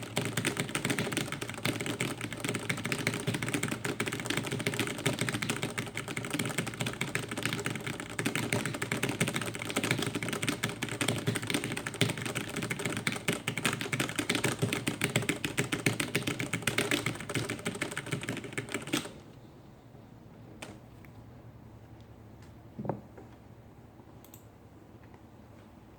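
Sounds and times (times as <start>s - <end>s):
fast typing on computer keyboard: 0.0s - 19.2s.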